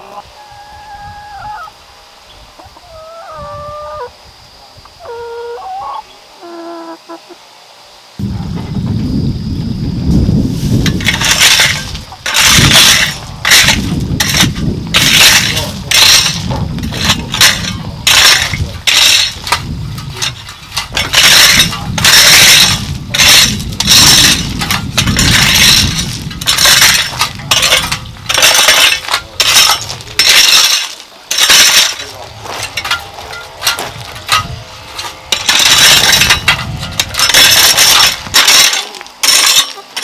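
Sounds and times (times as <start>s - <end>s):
steady low rumble: 8.2s - 30.6s, 31.4s - 38.7s
gritty scraping and clinking stone: 10.8s - 39.9s.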